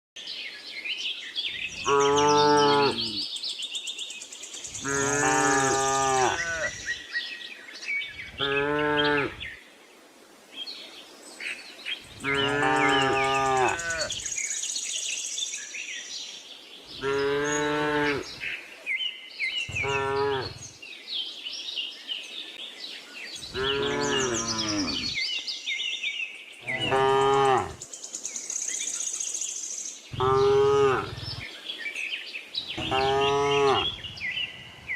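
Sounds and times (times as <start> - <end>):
birds chirping: 0.3 - 9.7, 11.8 - 34.9
cattle mooing: 4.8 - 6.7, 19.7 - 20.6, 23.5 - 25.2, 26.7 - 27.8, 30.2 - 31.4, 32.8 - 34.1.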